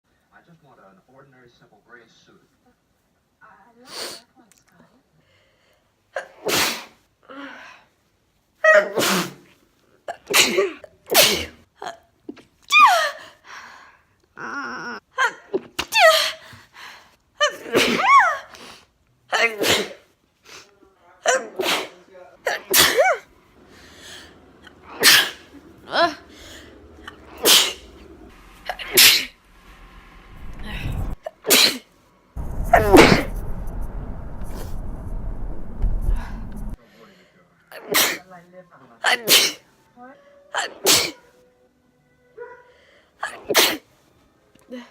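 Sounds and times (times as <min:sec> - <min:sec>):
person sneezing: 0:06.2 - 0:07.0, 0:08.8 - 0:09.5, 0:10.1 - 0:11.6, 0:17.6 - 0:18.8, 0:19.4 - 0:20.1, 0:21.3 - 0:23.2, 0:37.8 - 0:38.2, 0:39.1 - 0:39.7, 0:40.6 - 0:41.2, 0:43.2 - 0:43.8.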